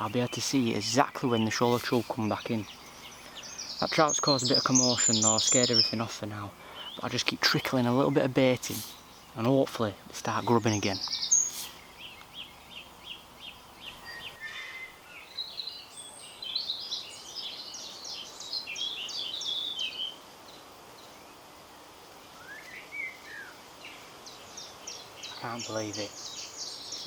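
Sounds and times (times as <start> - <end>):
faint steady hiss: 0.0 - 27.0
songbirds singing: 0.0 - 27.0.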